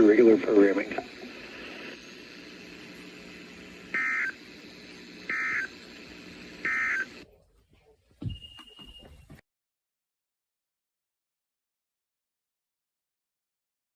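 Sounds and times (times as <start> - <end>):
radio receiver hiss: 0.0 - 7.3.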